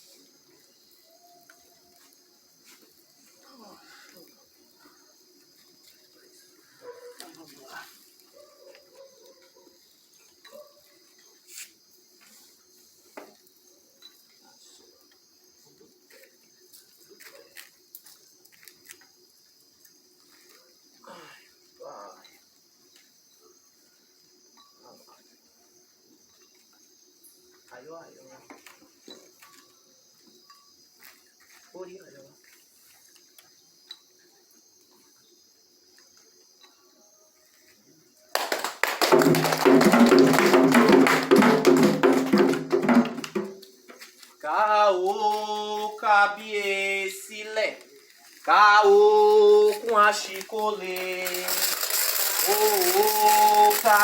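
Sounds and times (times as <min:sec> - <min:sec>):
crickets chirring: 0:00.0 - 0:54.0
ritual drums and percussion: 0:38.4 - 0:43.9, 0:51.0 - 0:54.0.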